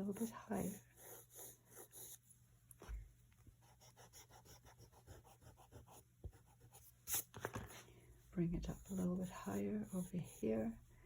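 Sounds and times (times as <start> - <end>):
pencil scratching on paper: 0.0 - 2.4, 3.6 - 7.8, 8.6 - 10.8.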